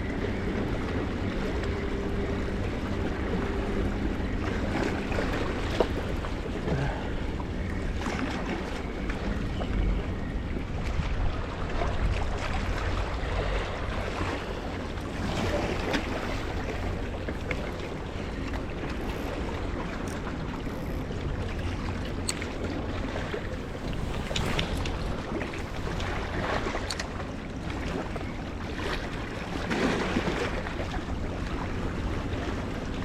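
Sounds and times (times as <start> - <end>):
wind buffeting microphone: 0.0 - 33.0
sea water washing on rocks: 13.8 - 21.0, 21.7 - 31.1.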